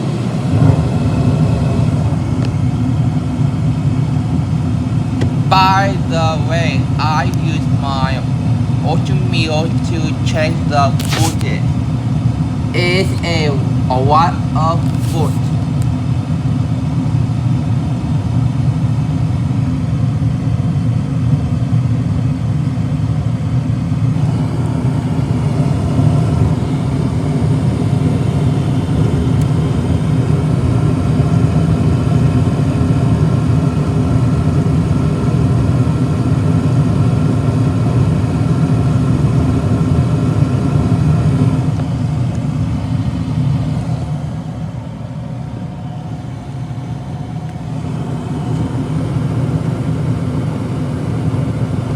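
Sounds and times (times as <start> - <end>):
motor humming: 5.2 - 16.0, 24.1 - 36.9, 45.8 - 51.9.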